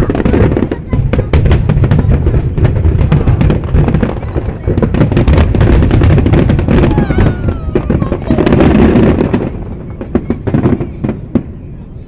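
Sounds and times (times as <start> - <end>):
fireworks booming: 0.0 - 12.0
fireworks crackling: 0.0 - 12.0.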